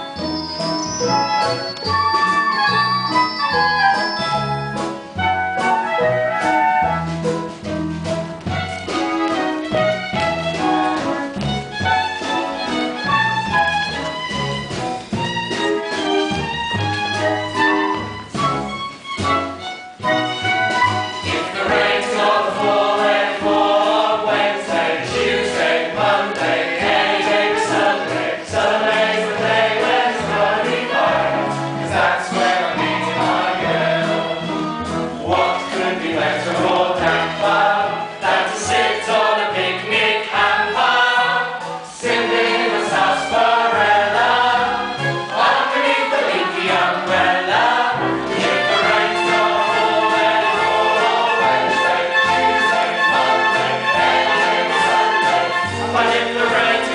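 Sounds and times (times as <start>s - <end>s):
orchestral accompaniment: 0.0s - 56.9s
chorus singing together: 21.2s - 56.9s.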